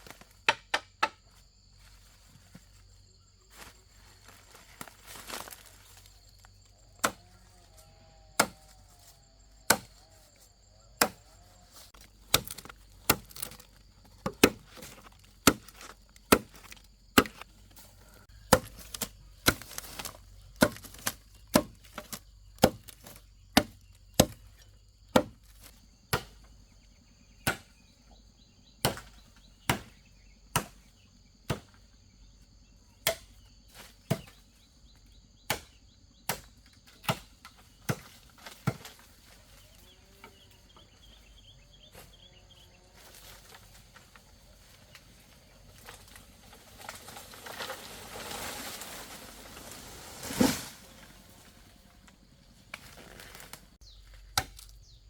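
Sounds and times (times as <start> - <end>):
sharp chopping strikes: 8.4 - 8.6, 18.5 - 19.8, 25.1 - 25.4, 27.4 - 27.7, 28.8 - 29.9.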